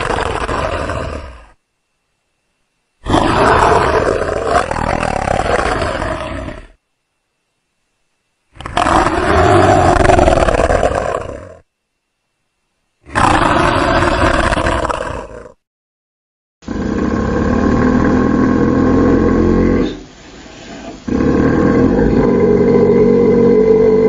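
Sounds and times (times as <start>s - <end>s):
creature roar: 0.0s - 1.5s.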